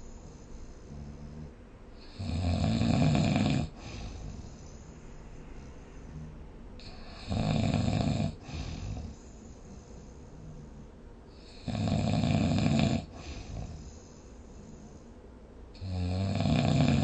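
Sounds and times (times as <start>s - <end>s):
person snoring: 0.8s - 4.6s, 6.0s - 9.3s, 10.3s - 14.0s, 15.8s - 17.0s.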